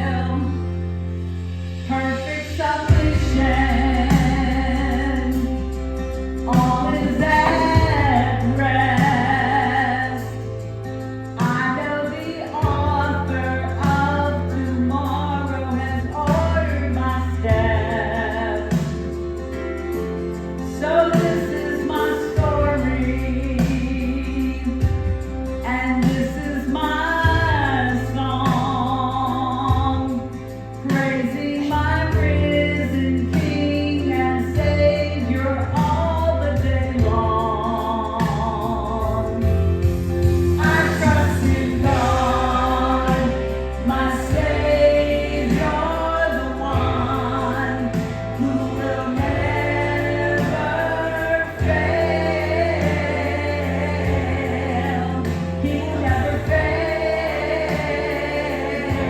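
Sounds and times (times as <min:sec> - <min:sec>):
woman singing gospel song: 0:00.0 - 0:00.7, 0:01.9 - 0:10.6, 0:11.3 - 0:19.2, 0:20.7 - 0:39.6, 0:40.5 - 0:59.0
instrumental accompaniment: 0:00.0 - 0:59.0
other voices singing: 0:40.6 - 0:59.0.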